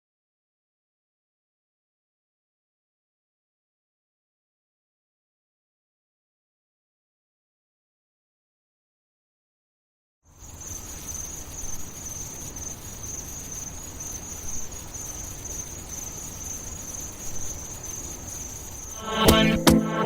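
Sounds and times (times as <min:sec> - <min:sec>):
crickets chirring: 0:10.3 - 0:20.0
night ambience hiss: 0:10.3 - 0:20.0.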